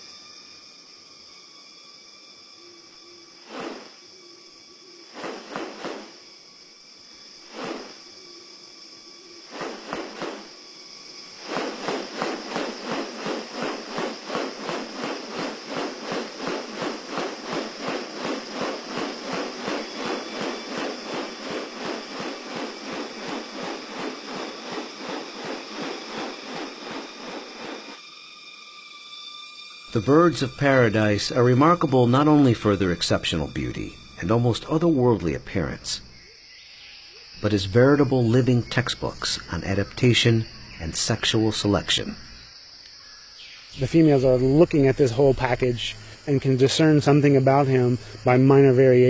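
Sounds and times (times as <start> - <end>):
insects droning: 0.0 - 49.0
rapid rustling pulses: 3.4 - 4.0, 5.1 - 6.3, 7.5 - 8.2, 9.4 - 28.1.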